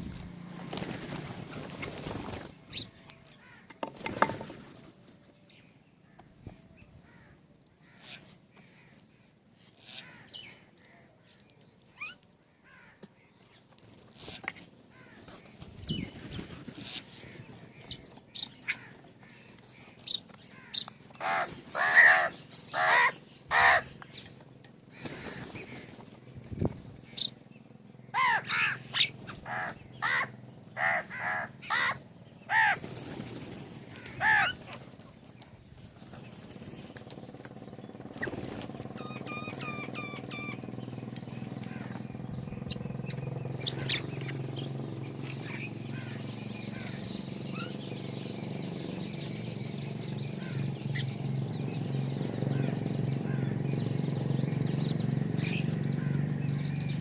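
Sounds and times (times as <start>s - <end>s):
small birds chirping: 0.0s - 57.0s
crows cawing: 3.3s - 4.3s, 7.0s - 9.0s, 9.8s - 11.1s, 12.5s - 13.2s, 14.9s - 15.4s, 18.6s - 24.1s, 24.9s - 26.1s, 28.1s - 32.9s, 33.8s - 34.8s, 41.6s - 42.1s, 45.5s - 47.1s, 52.5s - 53.6s, 56.0s - 56.3s.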